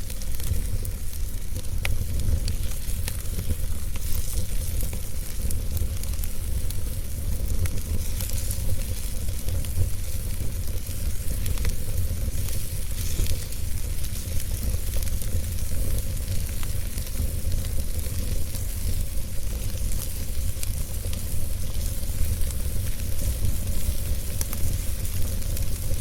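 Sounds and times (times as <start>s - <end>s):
fire crackles and pops: 0.0s - 26.0s
wood fire hissing: 0.0s - 26.0s.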